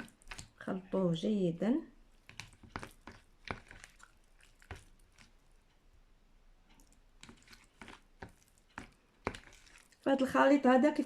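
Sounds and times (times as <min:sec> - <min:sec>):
spoon stirring in oil: 0:00.0 - 0:00.7, 0:02.0 - 0:05.7, 0:06.8 - 0:10.3.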